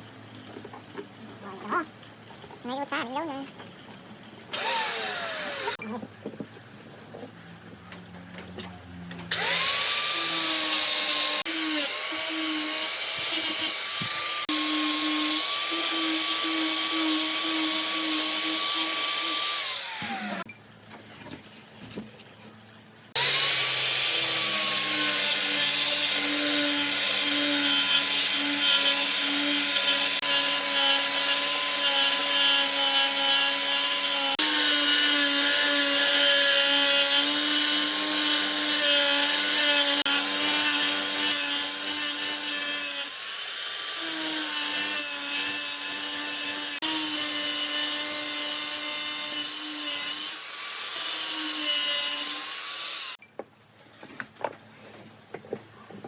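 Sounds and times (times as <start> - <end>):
power tool motor whining: 4.5 - 5.8, 9.3 - 20.5.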